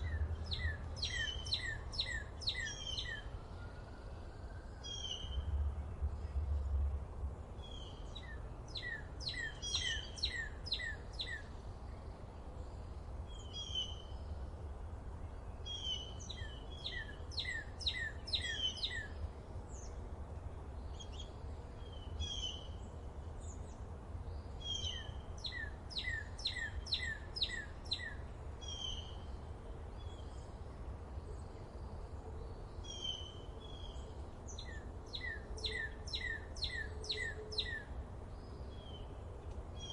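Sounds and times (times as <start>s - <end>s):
bird chirps: 0.0s - 3.3s, 7.7s - 11.5s, 24.6s - 29.3s, 32.8s - 37.9s.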